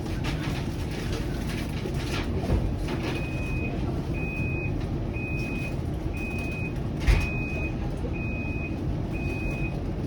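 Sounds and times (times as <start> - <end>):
streetcar low rumble: 0.0 - 10.0.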